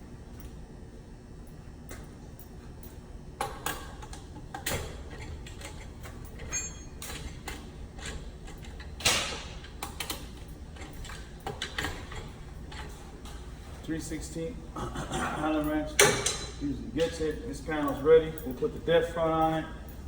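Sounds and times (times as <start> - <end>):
hand tools clicking and clattering: 1.9 - 20.0.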